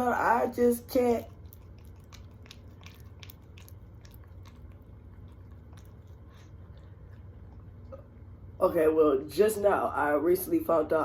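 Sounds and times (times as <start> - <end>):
person chewing food: 0.8 - 8.4.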